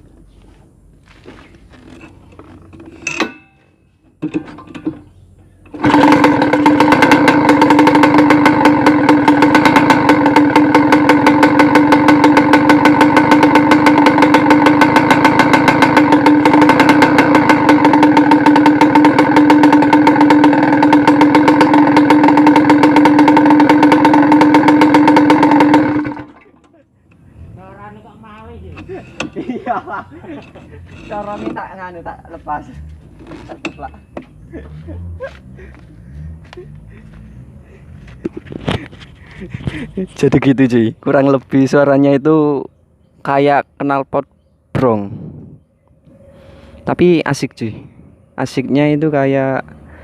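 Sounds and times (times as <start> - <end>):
two-stroke motorcycle engine running: 5.6 - 27.8, 28.4 - 41.3
tinny rattle: 5.7 - 26.8.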